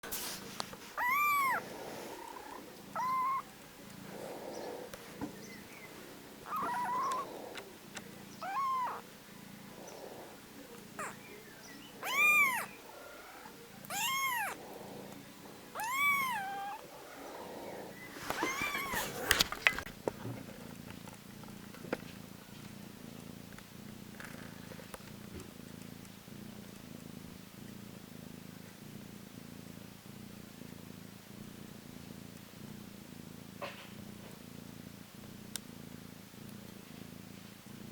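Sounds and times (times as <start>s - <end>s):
soft purring: 0.0s - 37.9s
kittens meowing: 1.0s - 3.5s, 6.4s - 9.1s, 11.0s - 14.7s, 15.7s - 17.3s, 17.9s - 19.9s.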